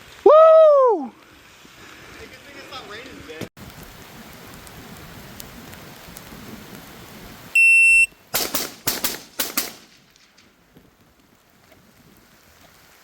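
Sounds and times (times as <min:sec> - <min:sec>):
rain hiss: 0:00.0 - 0:13.0
shot timer beep: 0:07.6 - 0:08.2
gunshots: 0:08.3 - 0:10.5.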